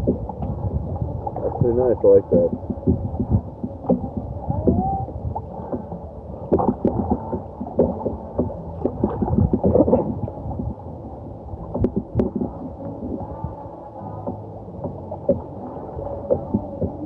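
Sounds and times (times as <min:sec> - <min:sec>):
water gurgling against hull: 0:00.0 - 0:17.0
muffled knocks: 0:02.3 - 0:04.9.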